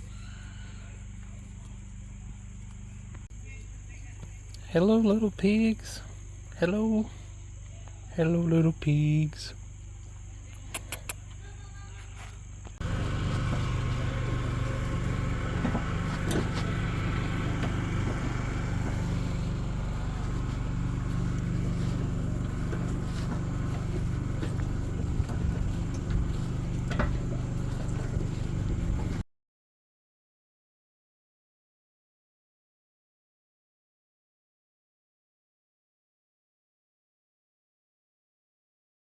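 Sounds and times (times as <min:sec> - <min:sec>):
vehicle engine hum: 0:00.0 - 0:29.2
scattered clicks: 0:10.5 - 0:11.3
road noise: 0:12.4 - 0:29.2.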